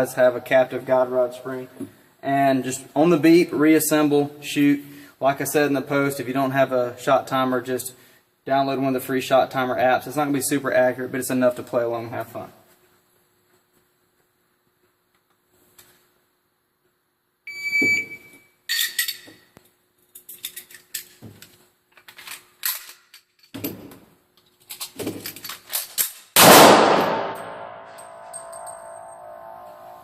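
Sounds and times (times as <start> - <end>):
loud pistol shot: 26.4 - 27.9.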